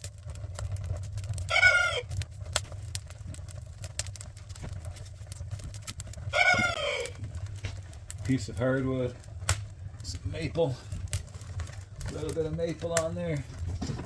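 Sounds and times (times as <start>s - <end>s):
sharp fire pops: 0.0s - 14.0s
wood crackling in stove: 0.0s - 14.0s
animal calls falling in pitch: 1.4s - 2.1s, 6.3s - 7.2s.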